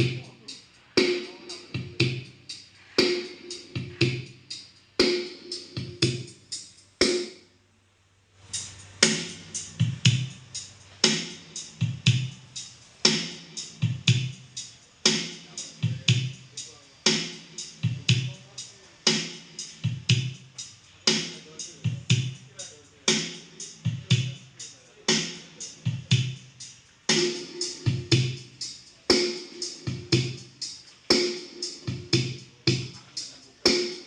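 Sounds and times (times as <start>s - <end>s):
electronic dance music with hard beat: 0.0s - 7.4s, 8.5s - 34.0s.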